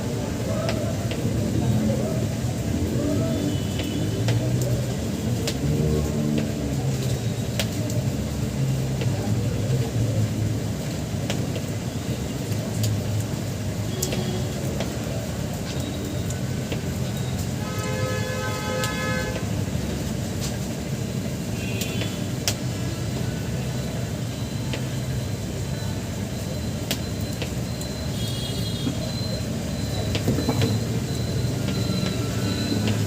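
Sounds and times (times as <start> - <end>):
vehicle horn: 17.6 - 19.4.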